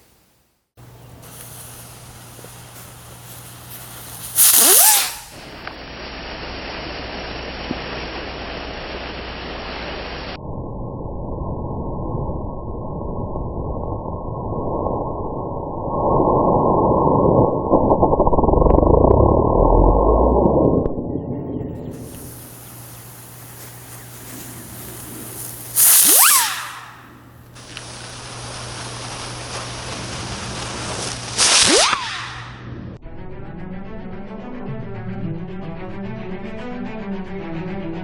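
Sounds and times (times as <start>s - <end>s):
fireworks fizzing low hiss: 0.0s - 10.4s, 21.8s - 32.7s
loud firework burst: 0.0s - 10.4s, 21.9s - 32.7s.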